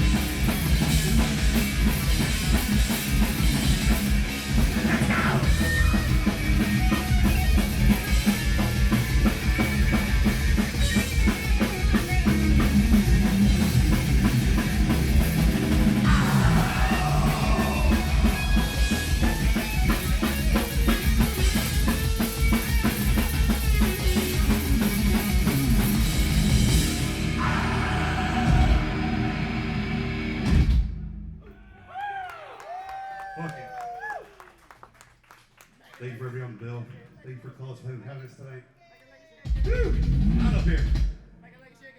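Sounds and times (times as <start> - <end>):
metal band playing live: 0.0 - 31.1
pounding bass drum: 0.0 - 31.3, 39.5 - 41.3.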